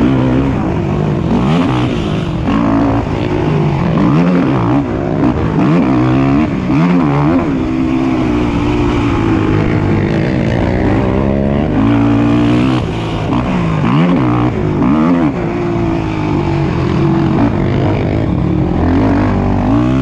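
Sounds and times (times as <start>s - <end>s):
atv engines revving: 0.0s - 20.0s.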